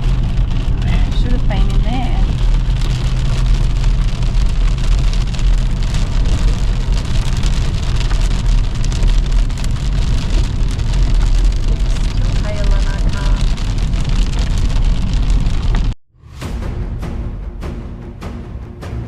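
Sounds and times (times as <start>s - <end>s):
car engine and road rumble: 0.0s - 16.0s
raindrops ticking on car: 0.0s - 16.0s.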